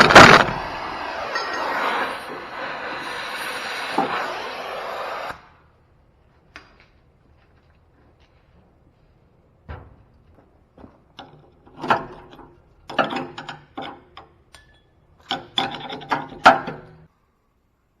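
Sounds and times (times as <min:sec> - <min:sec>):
metal parts and tools clanking: 0:01.3 - 0:02.4, 0:11.1 - 0:17.1.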